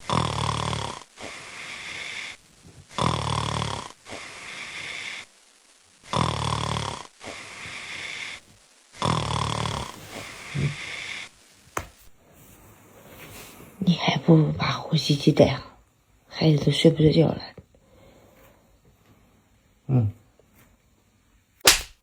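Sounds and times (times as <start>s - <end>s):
man snoring heavily: 0.0s - 5.2s, 6.1s - 8.4s, 9.0s - 11.3s.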